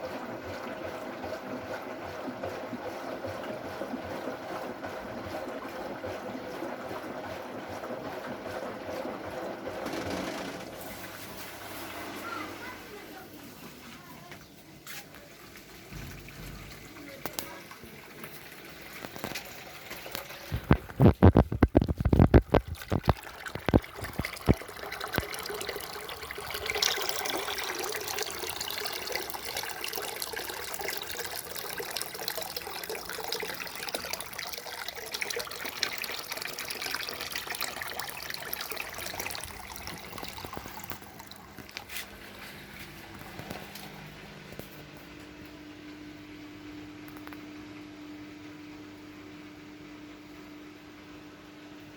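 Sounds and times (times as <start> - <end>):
water rushing in washing machine: 0.0 - 45.8
loud knocks and clatters: 9.7 - 11.1.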